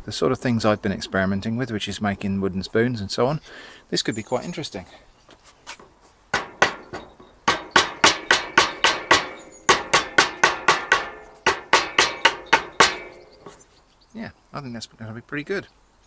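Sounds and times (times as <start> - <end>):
adze chopping wood: 6.3 - 13.6.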